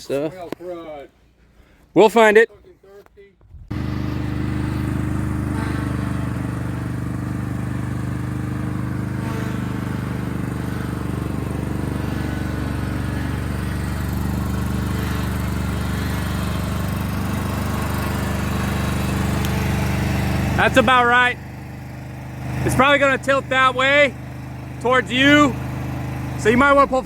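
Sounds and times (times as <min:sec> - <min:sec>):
engine idling: 0:03.7 - 0:27.0.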